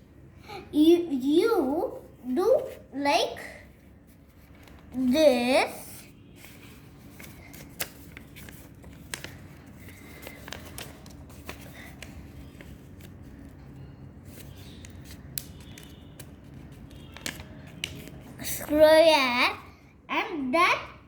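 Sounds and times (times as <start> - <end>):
paper being folded and creased: 4.1 - 5.2, 6.4 - 18.5
paper crackles and taps: 4.3 - 5.0, 6.5 - 13.7, 14.3 - 18.3.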